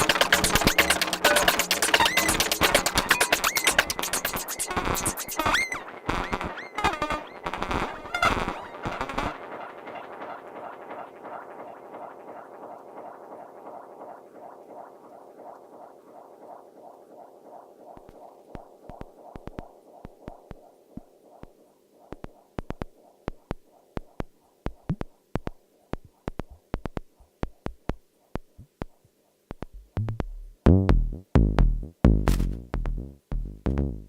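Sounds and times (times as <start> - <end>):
sharp clicking percussion: 0.0 - 6.5, 16.4 - 33.8
pulsing synth texture: 0.0 - 21.4
heavy kick drum: 29.6 - 33.8.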